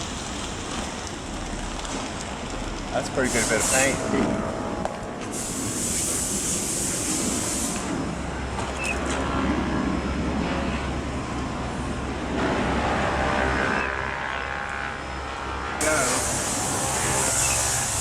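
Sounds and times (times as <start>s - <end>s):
high hiss: 3.2s - 4.2s, 5.2s - 8.1s, 15.8s - 18.0s.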